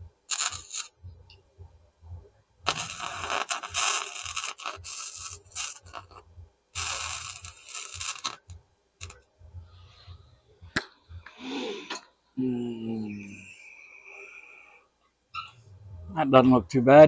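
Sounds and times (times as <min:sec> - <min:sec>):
arc welder crackling and sizzling: 0:00.3 - 0:01.0, 0:02.7 - 0:06.2, 0:06.8 - 0:09.2.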